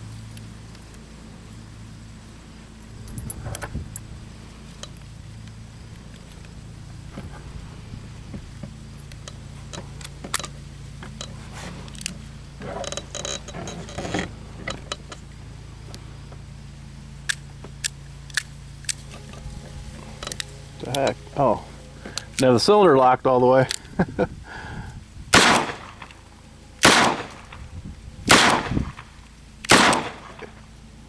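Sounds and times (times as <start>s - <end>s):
revolver metallic clicks and rattles: 2.9s - 7.4s, 8.5s - 22.8s, 23.6s - 24.0s, 25.3s - 31.0s
revolver sharp clicks: 25.4s - 26.2s, 26.8s - 27.6s, 28.3s - 30.6s.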